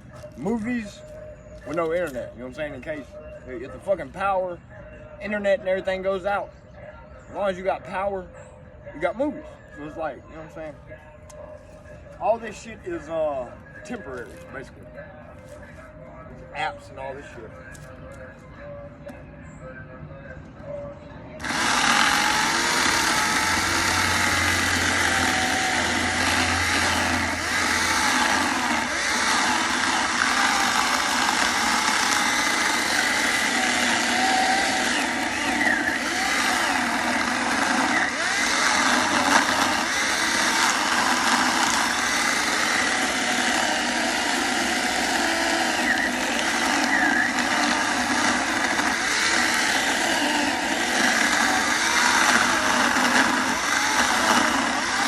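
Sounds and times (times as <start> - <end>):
electric chainsaw running: 21.4 - 55.0.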